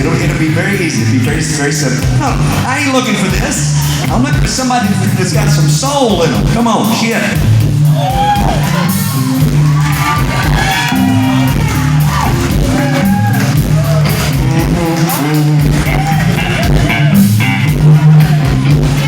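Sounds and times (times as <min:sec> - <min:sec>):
rock music with guitar and bass: 0:00.0 - 0:19.0
person singing: 0:14.3 - 0:16.2.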